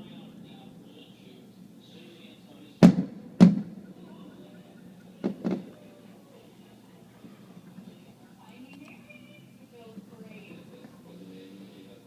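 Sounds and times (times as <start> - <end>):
fireworks bursting: 2.8 - 3.8, 5.2 - 5.8.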